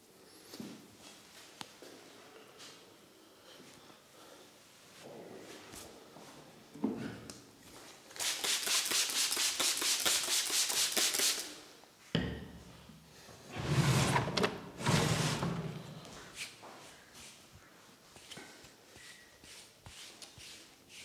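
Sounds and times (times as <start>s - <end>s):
hands slapping in massage: 8.2s - 11.5s.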